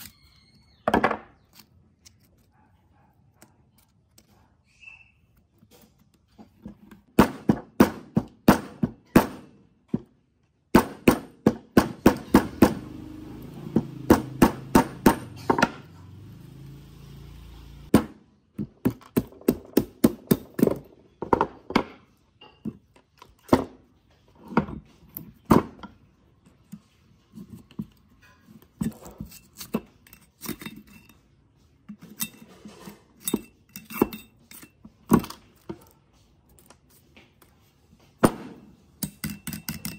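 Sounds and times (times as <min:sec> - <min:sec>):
metal tools knocking and tapping: 0:20.5 - 0:23.7, 0:31.9 - 0:35.8, 0:39.0 - 0:39.9.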